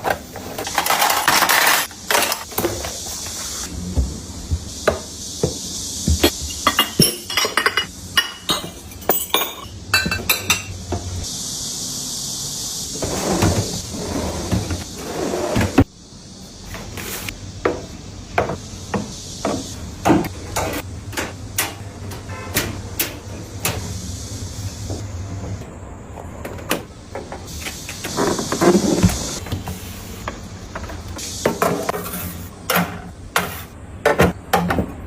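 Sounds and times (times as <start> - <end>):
steady hiss: 0.0 - 25.4, 26.8 - 33.9
dishes and glass clinking: 6.2 - 10.8.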